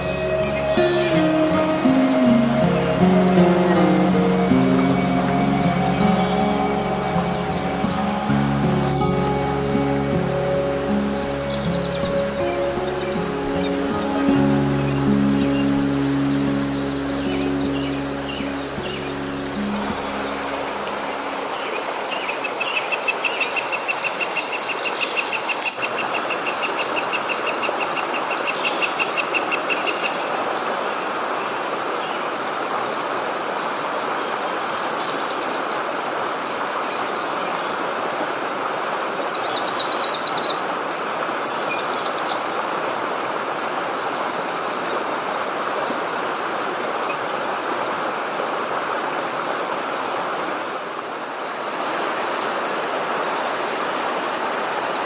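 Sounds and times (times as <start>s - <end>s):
birds chirping: 0.0s - 25.4s
stream water rushing: 0.0s - 55.0s.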